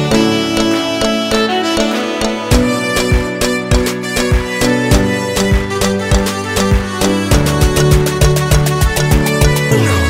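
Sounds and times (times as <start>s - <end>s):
string-like melody: 0.0s - 10.0s
bass beat: 2.4s - 10.0s.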